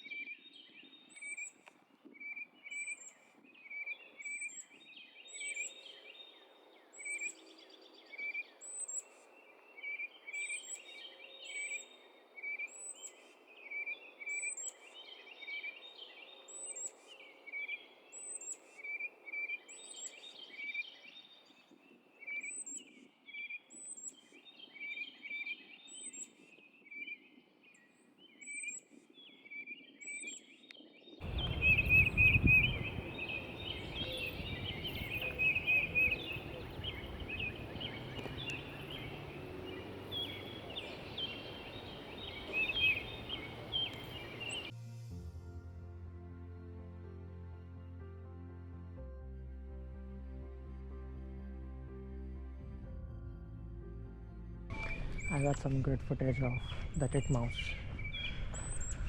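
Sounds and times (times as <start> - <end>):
songbirds chirping: 0.0 - 44.8
birds twittering: 31.2 - 44.7
wind buffeting microphone: 31.2 - 44.7.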